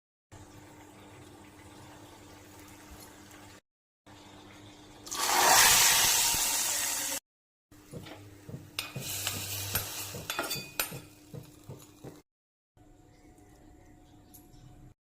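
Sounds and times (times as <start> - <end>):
loud sizzling in a pan: 5.1 - 7.2, 8.8 - 10.8
spoon clinking against pot: 10.1 - 11.1.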